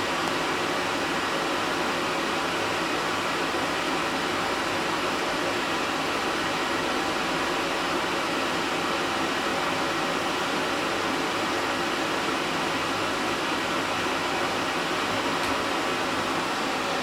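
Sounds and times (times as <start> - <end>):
steady fan hiss: 0.0 - 17.0.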